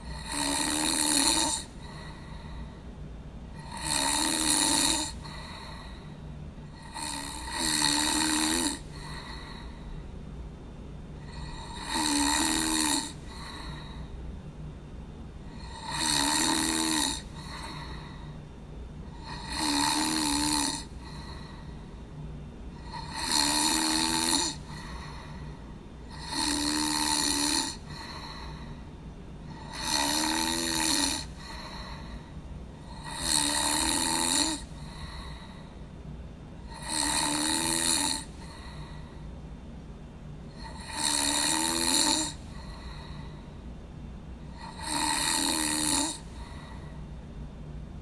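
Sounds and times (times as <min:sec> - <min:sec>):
person snoring: 0:00.0 - 0:02.8, 0:03.6 - 0:10.0, 0:11.2 - 0:14.1, 0:15.5 - 0:18.4, 0:19.0 - 0:21.9, 0:22.7 - 0:28.8, 0:29.5 - 0:35.7, 0:36.6 - 0:39.2, 0:40.5 - 0:43.4, 0:44.5 - 0:47.0
steady low hum: 0:00.0 - 0:48.0.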